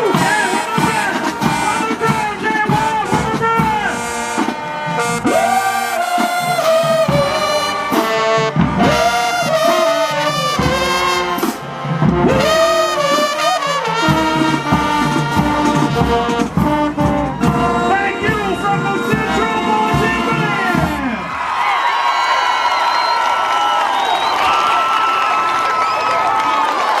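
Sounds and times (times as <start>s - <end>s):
brass section playing a tune: 0.0s - 21.4s.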